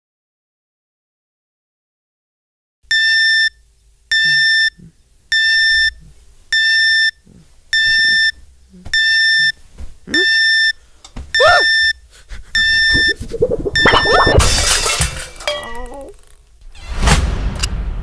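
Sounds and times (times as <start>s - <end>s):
alarm clock beeping: 7.8s - 8.4s, 9.0s - 9.6s, 11.4s - 12.0s, 12.6s - 14.4s.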